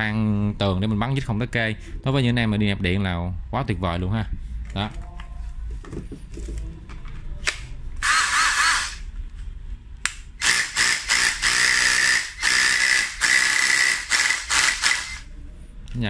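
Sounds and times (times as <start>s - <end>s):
hammer drill motor whining: 8.0s - 9.0s, 10.4s - 15.2s.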